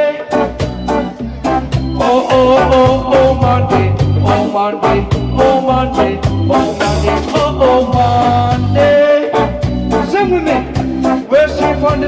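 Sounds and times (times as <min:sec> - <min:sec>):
live reggae band playing: 0:00.0 - 0:12.0.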